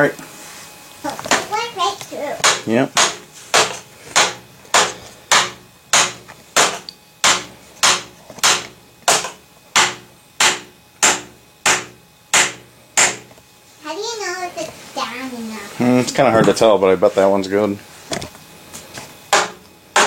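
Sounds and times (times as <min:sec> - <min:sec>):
hammer striking pipe: 0:02.4 - 0:13.3, 0:19.3 - 0:20.0.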